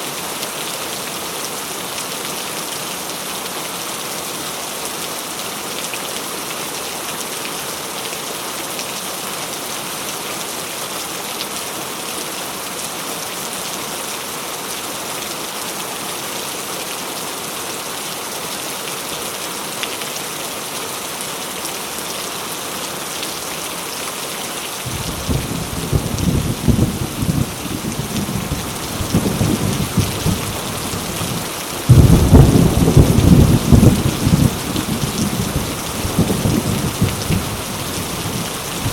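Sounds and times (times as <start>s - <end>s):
heavy rain pouring: 0.0s - 38.9s
low rumble of thunder: 24.9s - 38.9s.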